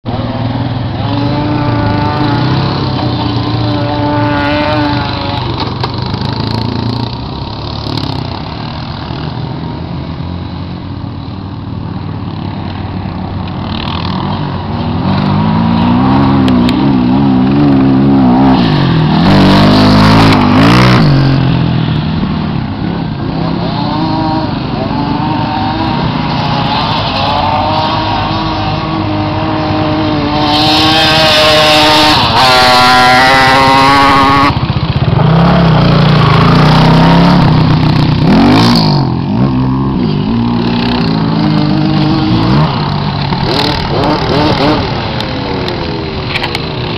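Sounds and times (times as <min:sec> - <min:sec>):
atv engines revving: 0:00.0 - 0:46.9.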